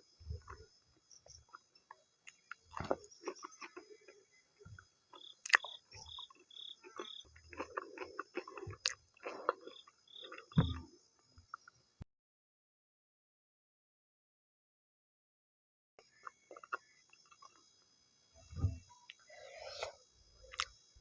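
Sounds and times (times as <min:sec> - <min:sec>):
insect chirping in pulses: 0:00.0 - 0:12.0, 0:16.0 - 0:21.0
wet chewing and mouth clicks: 0:01.4 - 0:04.2, 0:04.8 - 0:10.8, 0:16.2 - 0:17.6, 0:20.5 - 0:20.8.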